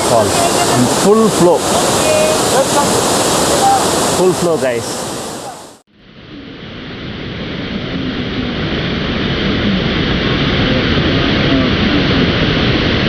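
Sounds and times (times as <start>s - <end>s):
waterfall rushing: 0.0s - 5.8s.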